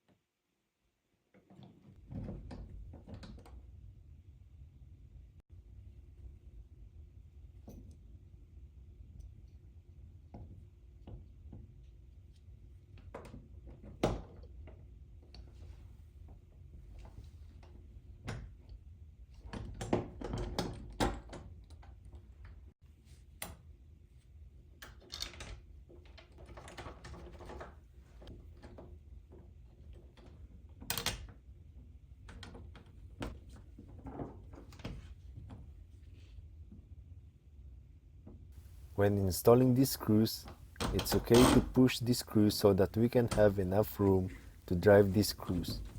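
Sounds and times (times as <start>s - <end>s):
metal doorknob parts clicking: 40.8s - 41.9s.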